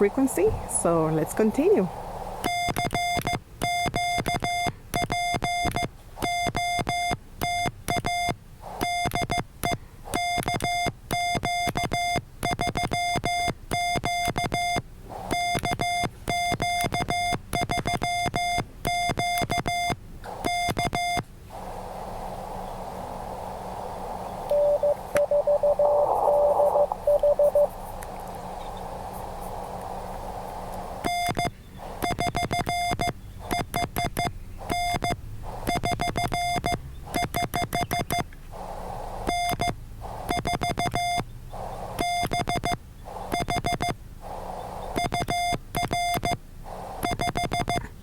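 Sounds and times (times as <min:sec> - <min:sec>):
faint lower morse signal: 0:00.0 - 0:47.9
receiver hiss: 0:00.0 - 0:47.9
morse code beeping: 0:02.4 - 0:09.4, 0:10.1 - 0:21.2, 0:24.5 - 0:27.7, 0:31.0 - 0:38.2, 0:39.2 - 0:44.0, 0:44.6 - 0:46.4, 0:47.0 - 0:47.9.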